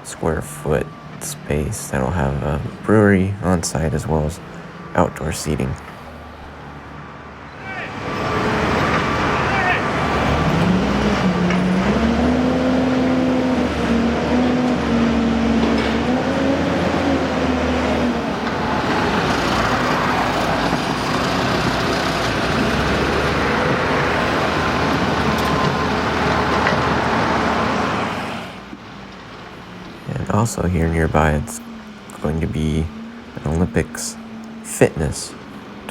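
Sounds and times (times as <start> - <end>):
traffic and tyres rushing: 0.0 - 35.9
vehicle engine: 0.0 - 35.9.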